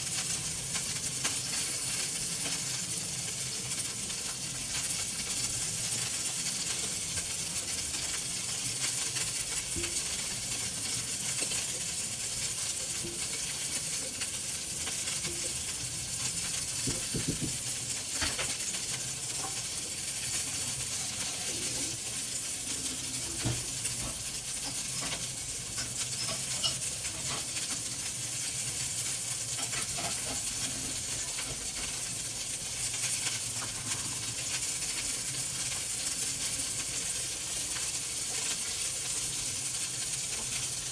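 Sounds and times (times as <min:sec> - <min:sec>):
food sizzling in a frying pan: 0:00.0 - 0:40.9
utensil knocking against pan: 0:16.8 - 0:18.4.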